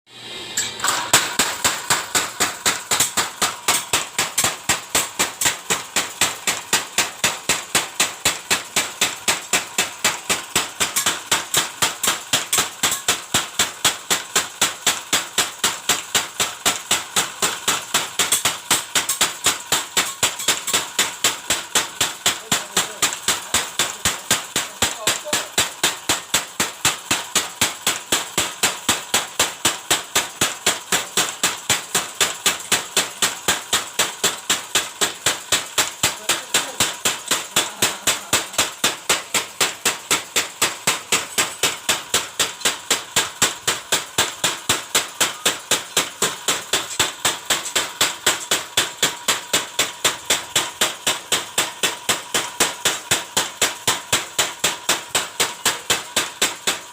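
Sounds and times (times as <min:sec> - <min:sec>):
power hammer striking: 0:00.4 - 0:56.9.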